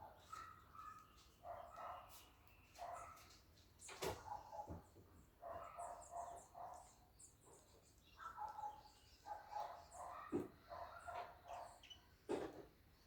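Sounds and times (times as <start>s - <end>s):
small birds chirping high: 5.6s - 12.2s.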